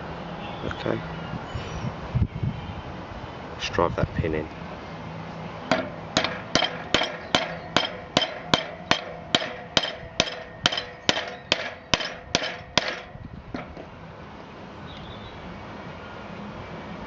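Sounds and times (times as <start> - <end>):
hammer striking metal pin tool: 5.7 - 13.9.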